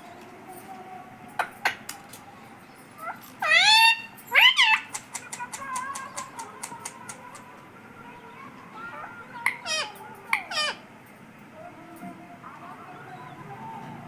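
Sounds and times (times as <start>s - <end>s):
parrot calls: 3.0s - 7.5s, 8.9s - 10.9s
sharp clicks: 4.9s - 7.5s.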